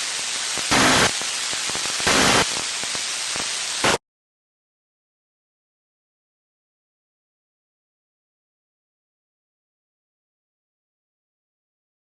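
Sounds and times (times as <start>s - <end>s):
radio static hiss: 0.0s - 4.0s
digital data bursts: 0.6s - 4.0s.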